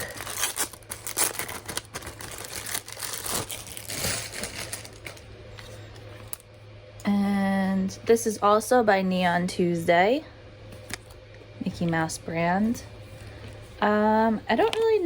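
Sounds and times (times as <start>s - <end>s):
keychain and packaging crinkling: 0.0s - 5.3s
faint electrical hum: 0.0s - 15.0s
woman humming: 7.0s - 7.9s.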